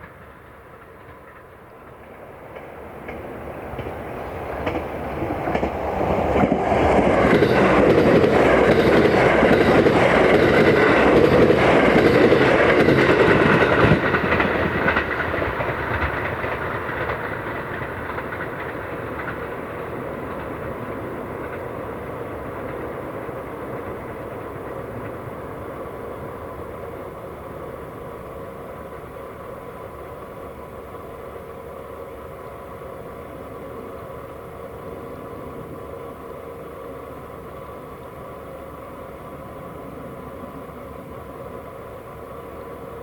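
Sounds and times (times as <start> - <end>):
wheels clicking over rail joints: 0.0 - 25.3
electric train passing: 0.0 - 43.0.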